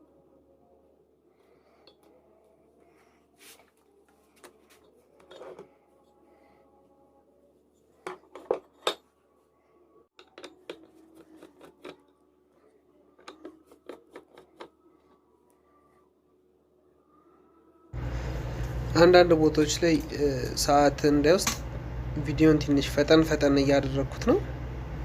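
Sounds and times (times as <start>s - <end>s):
faint low hum: 0.0s - 25.0s
metal tools clicking and clattering: 10.2s - 12.0s.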